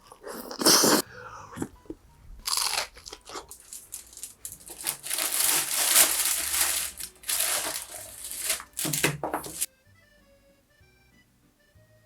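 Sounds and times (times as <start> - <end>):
crunchy chewing: 0.0 - 8.9.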